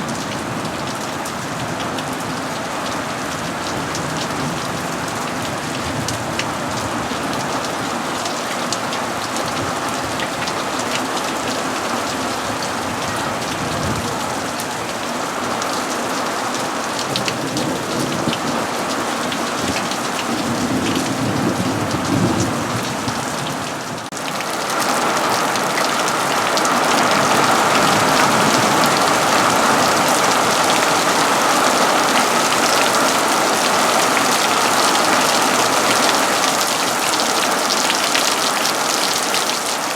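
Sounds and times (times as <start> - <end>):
rain pattering on surfaces: 0.0 - 39.9
low rumble of thunder: 19.6 - 24.0.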